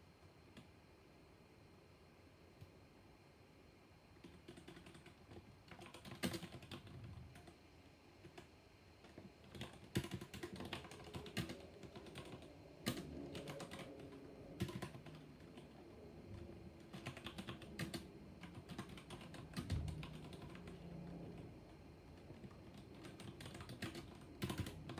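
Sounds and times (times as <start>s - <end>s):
typing on mechanical keyboard: 4.2s - 7.6s, 8.2s - 21.5s, 22.1s - 24.9s.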